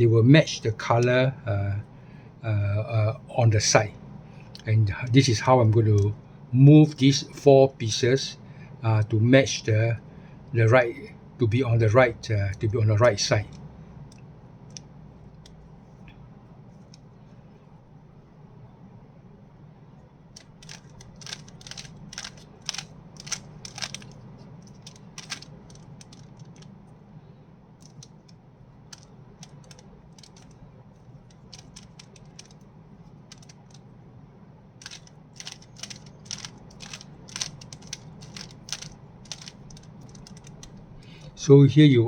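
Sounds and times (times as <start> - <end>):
low steady hum: 0.0 - 42.0
puzzle cube layers clicking: 20.4 - 26.6, 28.9 - 30.6, 31.3 - 32.6, 33.3 - 33.8, 34.8 - 40.8.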